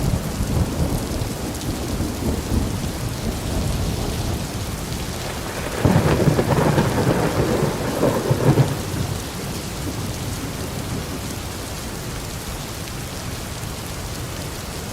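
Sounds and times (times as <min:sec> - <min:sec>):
thunder rumble: 0:00.0 - 0:11.4
steady rainfall: 0:00.0 - 0:14.9.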